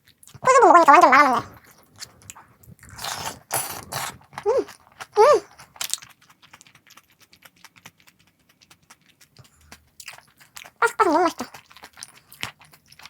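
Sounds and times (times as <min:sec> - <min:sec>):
crunching fried food: 0:00.0 - 0:13.0
person humming: 0:03.8 - 0:05.6, 0:10.8 - 0:11.5.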